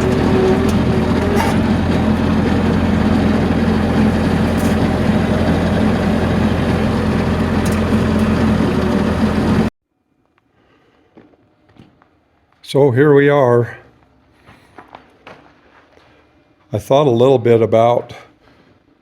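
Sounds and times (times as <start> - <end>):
heavy machine engine running: 0.0 - 9.7.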